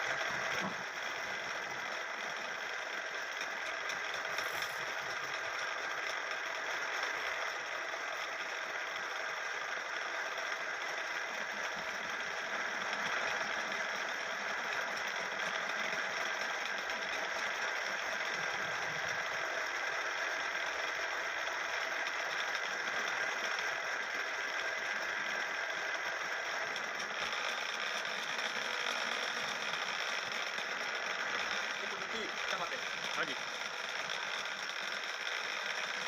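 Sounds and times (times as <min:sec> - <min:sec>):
lathe whirring: 0:22.0 - 0:36.0.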